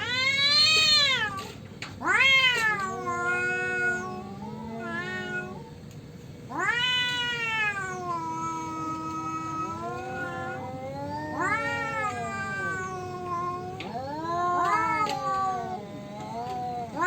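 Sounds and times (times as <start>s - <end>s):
cats yowling: 0.0s - 5.8s, 6.5s - 17.0s.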